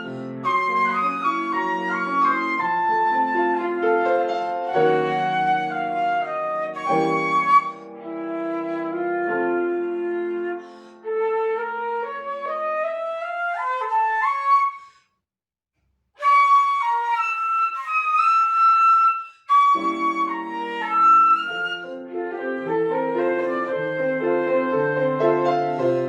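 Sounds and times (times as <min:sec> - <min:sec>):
piano chords: 0:00.0 - 0:10.6, 0:19.6 - 0:26.0
flute melody: 0:00.0 - 0:14.8, 0:16.2 - 0:26.0.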